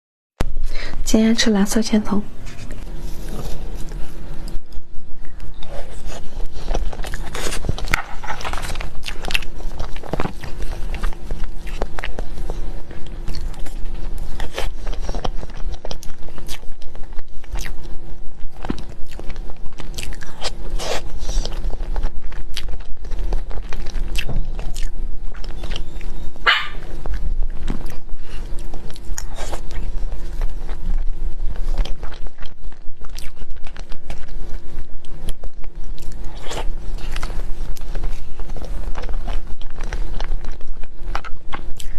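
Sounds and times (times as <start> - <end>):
faint steady hum: 0.4 - 41.9
wet chewing and mouth sounds: 2.4 - 41.9.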